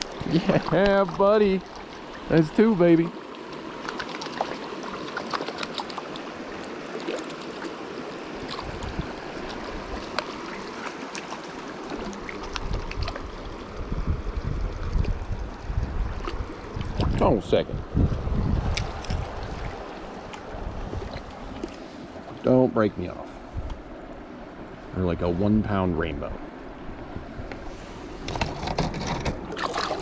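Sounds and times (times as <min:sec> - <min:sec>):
river water rushing: 0:00.0 - 0:14.4, 0:18.6 - 0:22.4
water splashes: 0:00.0 - 0:23.1, 0:27.7 - 0:30.0
wind buffeting microphone: 0:08.5 - 0:10.0, 0:12.0 - 0:21.7, 0:23.4 - 0:24.0.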